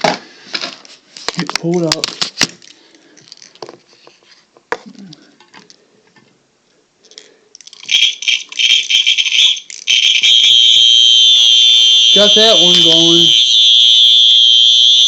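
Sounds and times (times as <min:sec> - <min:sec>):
light clicks and handling noise: 0:00.5 - 0:06.4, 0:07.0 - 0:07.9
fire alarm horn: 0:07.9 - 0:15.0.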